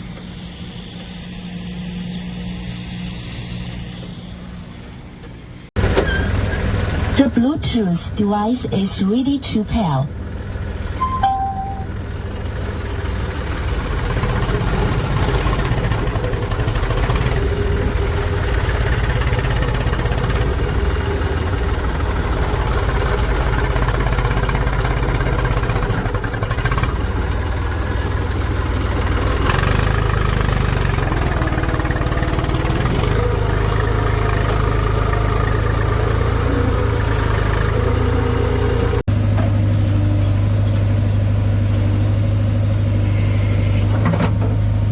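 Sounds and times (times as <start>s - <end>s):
diesel engine running: 12.0s - 44.9s.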